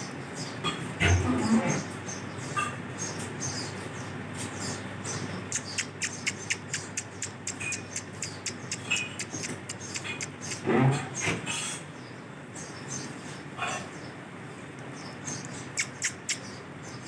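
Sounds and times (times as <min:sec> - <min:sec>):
parakeet clicks and squeaks: 0:05.5 - 0:10.6, 0:15.3 - 0:16.6.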